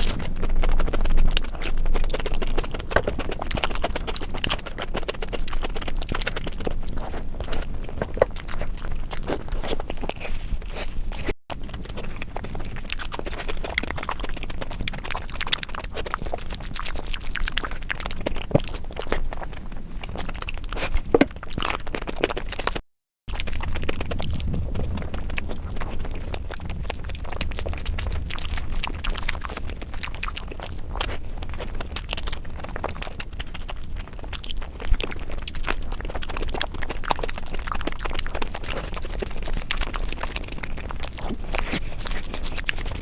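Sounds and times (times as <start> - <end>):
chewing and wet mouth sounds: 0.0 - 43.0.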